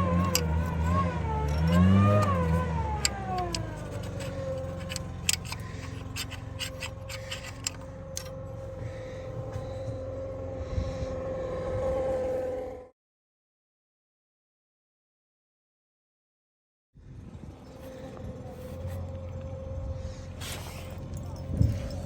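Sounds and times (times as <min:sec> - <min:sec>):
rattling clicks: 0:00.0 - 0:08.3
diesel engine revving: 0:00.0 - 0:12.5.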